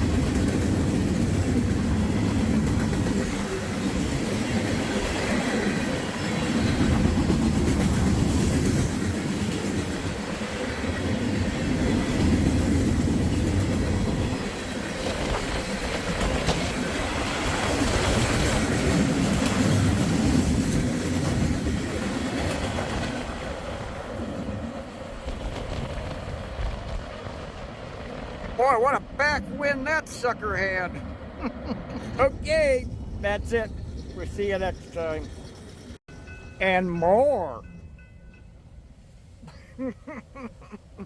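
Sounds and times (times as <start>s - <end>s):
train wheels rumbling on rails: 0.0s - 30.0s.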